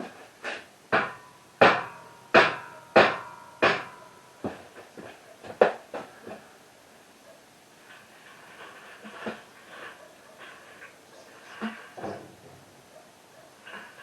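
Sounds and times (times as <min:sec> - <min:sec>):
sharp metal knocks ringing: 0:00.9 - 0:04.2.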